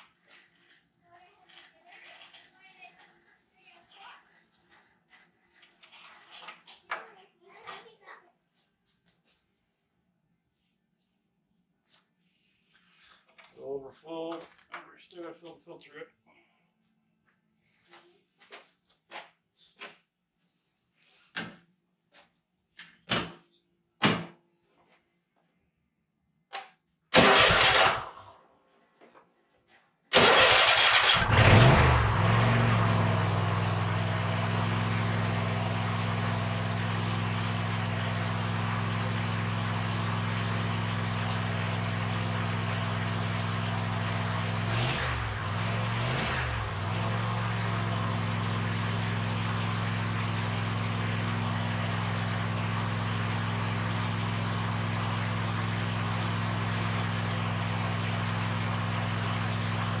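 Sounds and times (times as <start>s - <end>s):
mower engine running: 27.2s - 28.2s, 30.1s - 60.0s.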